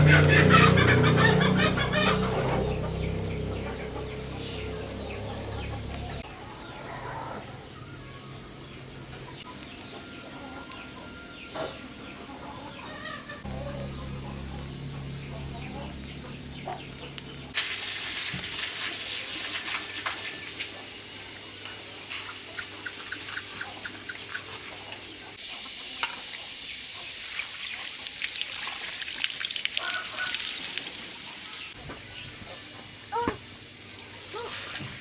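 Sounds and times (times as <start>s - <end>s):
water running and splashing: 17.6s - 20.8s, 27.0s - 31.8s.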